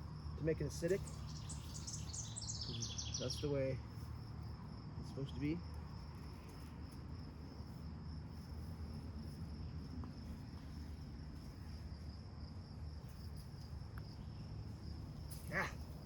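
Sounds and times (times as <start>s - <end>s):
crickets chirring: 0.0s - 16.0s.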